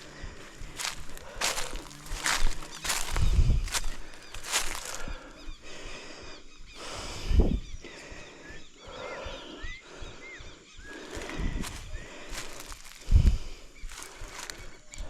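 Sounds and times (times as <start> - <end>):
footsteps on a trail: 0.0 - 5.4, 10.8 - 15.0.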